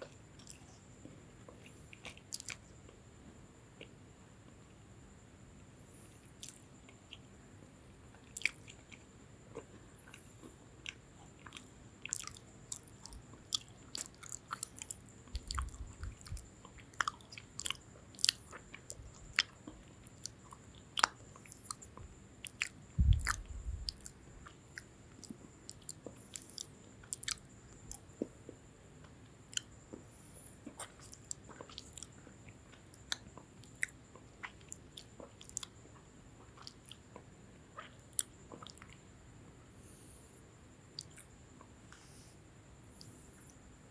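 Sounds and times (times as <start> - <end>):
crunchy biscuit chewing: 0.0 - 4.0, 5.9 - 39.1, 41.0 - 42.3
low thumps: 23.0 - 23.9.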